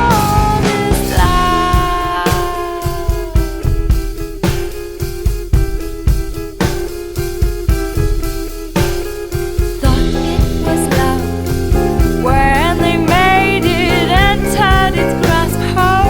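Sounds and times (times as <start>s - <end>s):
person singing: 0.0s - 3.8s, 9.8s - 16.0s
guitar with drums: 0.0s - 16.0s.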